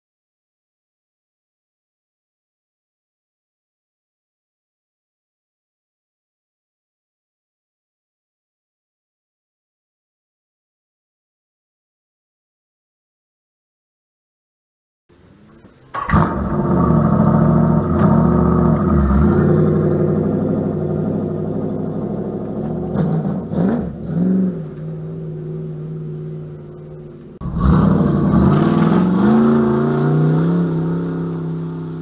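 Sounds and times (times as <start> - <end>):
engine running and revving: 15.9 - 32.0.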